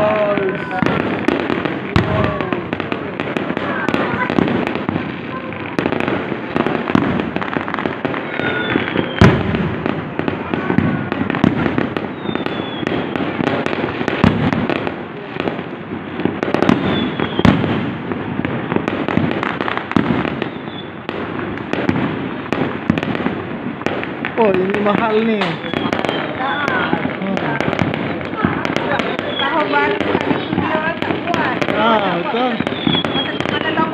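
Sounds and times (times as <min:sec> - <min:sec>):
fireworks crackling and banging: 0:00.0 - 0:33.9
falling whistles: 0:08.3 - 0:09.3, 0:12.1 - 0:12.9, 0:16.8 - 0:17.6, 0:20.4 - 0:21.0, 0:25.6 - 0:26.9, 0:32.4 - 0:33.6.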